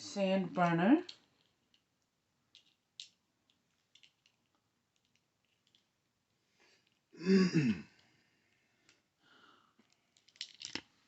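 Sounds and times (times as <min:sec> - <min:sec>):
toy cars clicking and tapping: 0:02.5 - 0:05.9, 0:09.8 - 0:10.9.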